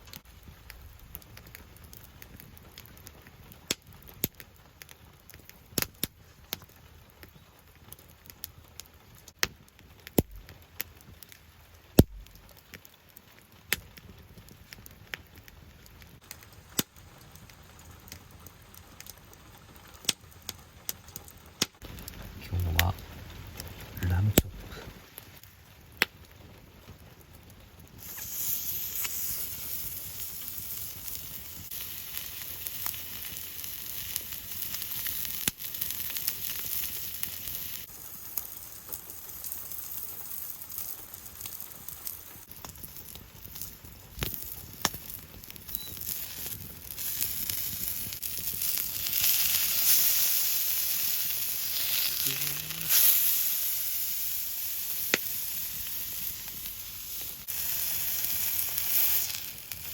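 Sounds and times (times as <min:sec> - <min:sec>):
meat sizzling on griddle: 0:27.9 - 0:59.9.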